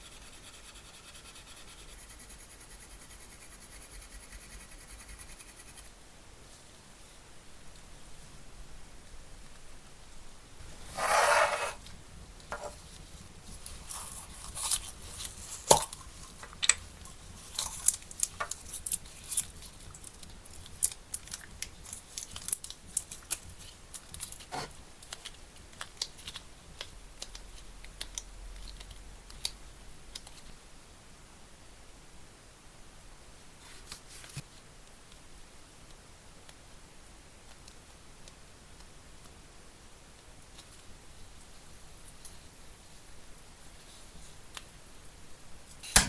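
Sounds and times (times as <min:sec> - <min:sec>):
ripping or scraping noise: 0:10.8 - 0:11.9.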